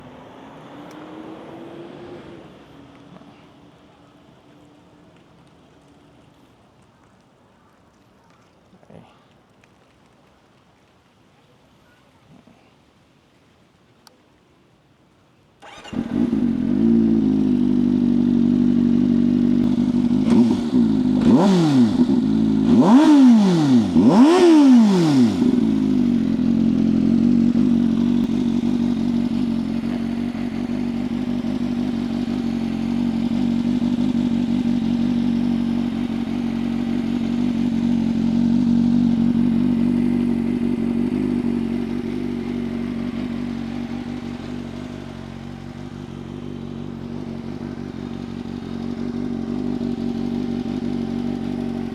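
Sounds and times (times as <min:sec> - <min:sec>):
motorcycle engine idling and revving: 0:00.0 - 0:03.7, 0:15.6 - 0:51.9.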